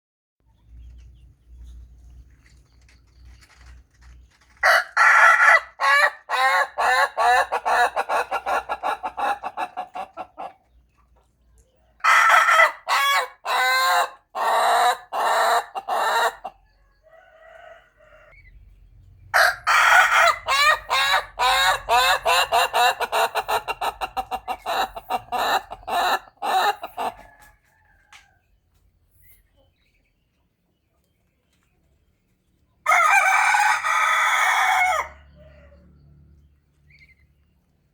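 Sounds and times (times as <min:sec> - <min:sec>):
rooster crowing: 0:04.6 - 0:08.0, 0:12.0 - 0:18.4, 0:19.4 - 0:23.1, 0:32.8 - 0:35.8.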